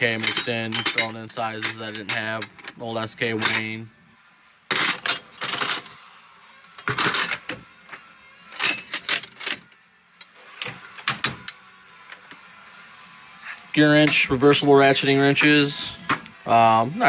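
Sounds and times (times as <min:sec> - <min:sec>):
metal wrenches clattering: 0:00.0 - 0:03.9, 0:04.7 - 0:06.0, 0:06.8 - 0:07.6, 0:08.5 - 0:09.7.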